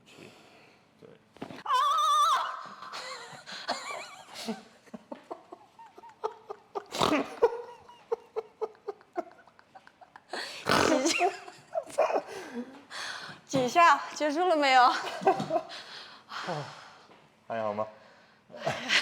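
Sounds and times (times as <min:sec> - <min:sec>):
person crying out: 0:01.6 - 0:03.0.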